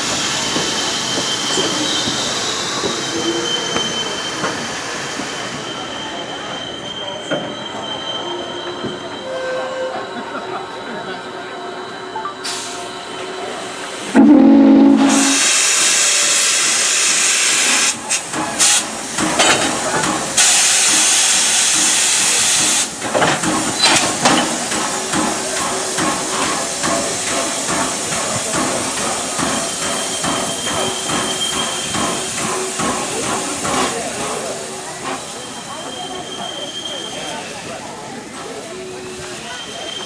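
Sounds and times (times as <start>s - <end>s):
steam hissing: 12.4s - 40.0s
steam locomotive exhaust chuffs: 13.3s - 40.0s
steam whistle blast: 14.0s - 16.2s.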